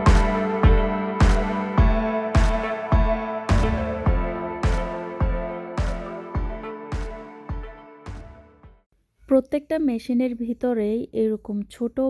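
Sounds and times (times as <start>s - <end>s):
music with steady beat: 0.0s - 8.8s.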